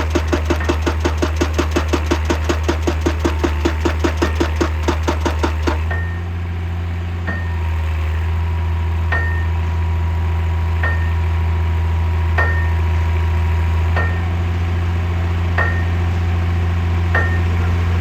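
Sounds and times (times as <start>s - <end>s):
excavator diesel engine: 0.0s - 10.8s.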